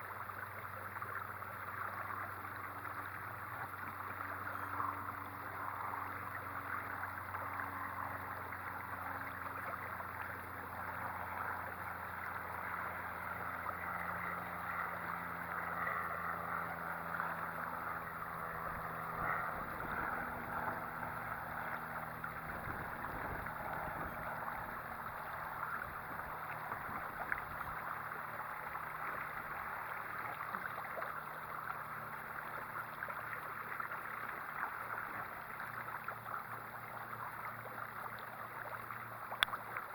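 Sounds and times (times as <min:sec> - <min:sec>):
low rumbling noise: 0:00.2 - 0:39.4
water splashing past hull: 0:00.3 - 0:39.9.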